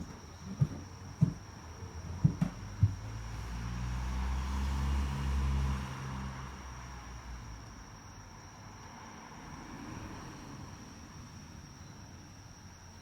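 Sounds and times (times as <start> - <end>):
vehicle engine hum passing: 2.6 - 7.4.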